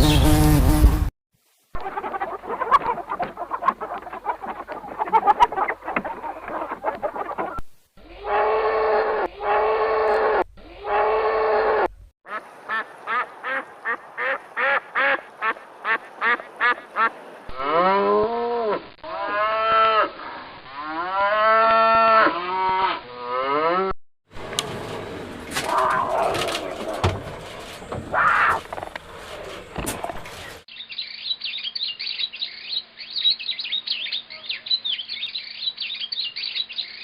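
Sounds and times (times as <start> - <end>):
short repeated quacking calls: 12.3 - 17.1
drawn-out mooing calls: 24.8 - 30.6.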